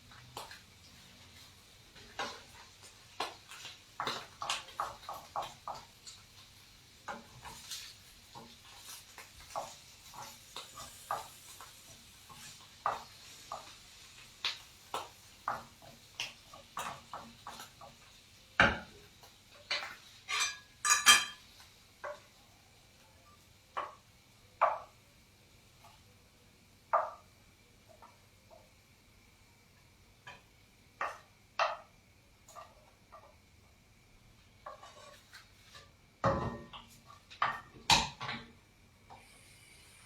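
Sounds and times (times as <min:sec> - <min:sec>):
utensils clinking against dishes: 0:19.7 - 0:21.5.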